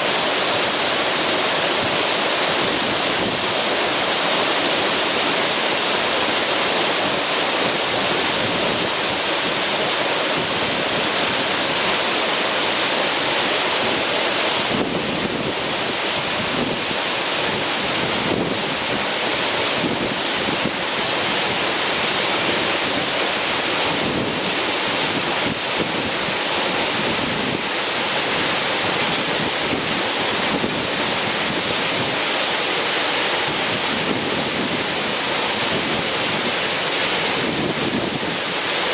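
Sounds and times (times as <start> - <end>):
waterfall rushing: 0.0 - 38.9
wind buffeting microphone: 37.3 - 38.5.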